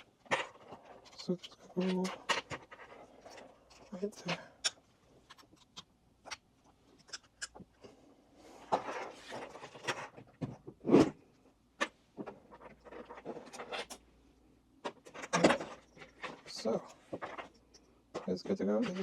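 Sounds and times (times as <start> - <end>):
hands handling small parts: 0.0 - 11.0.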